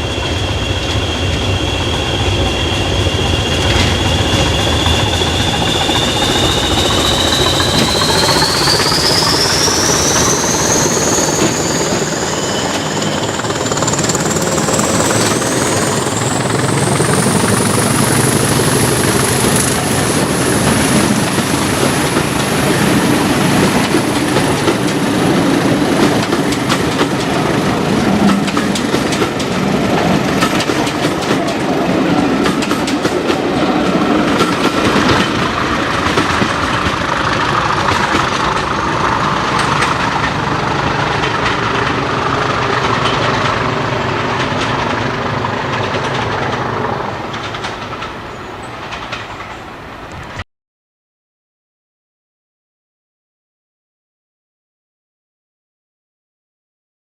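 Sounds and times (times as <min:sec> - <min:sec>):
diesel locomotive engine with whine: 0:00.0 - 0:50.4
wheels clicking over rail joints: 0:23.5 - 0:31.8, 0:32.4 - 0:50.2.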